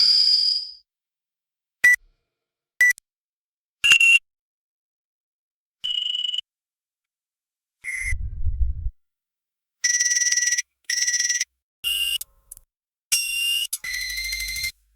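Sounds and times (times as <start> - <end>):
metal detector alarm beeps: 9.9 - 12.2.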